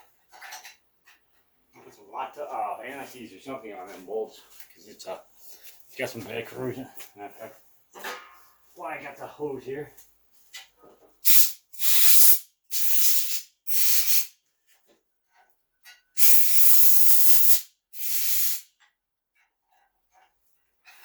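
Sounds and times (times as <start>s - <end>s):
air blow gun hissing: 11.2s - 14.3s, 16.2s - 18.7s.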